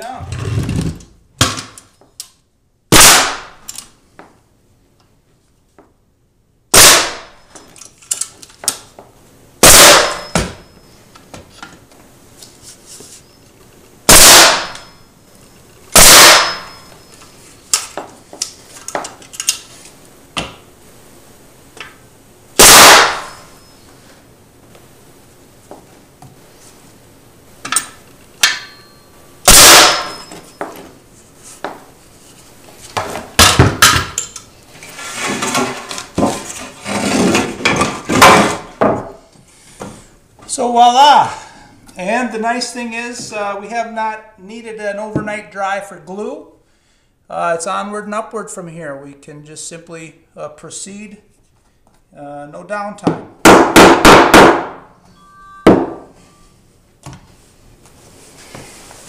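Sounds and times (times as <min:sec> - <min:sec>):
nail gun firing: 0:02.9 - 0:03.6, 0:06.7 - 0:07.3, 0:09.6 - 0:10.5, 0:14.1 - 0:14.9, 0:16.0 - 0:16.7, 0:22.6 - 0:23.4, 0:29.5 - 0:30.2, 0:38.1 - 0:38.6, 0:53.4 - 0:54.8.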